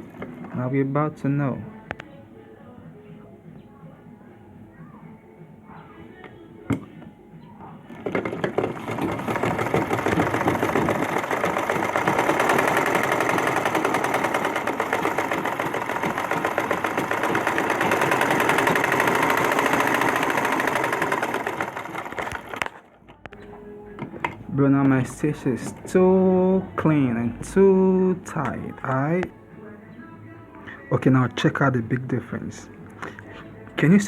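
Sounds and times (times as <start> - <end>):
sewing machine stitching clatter: 0.0 - 0.8, 7.9 - 23.0.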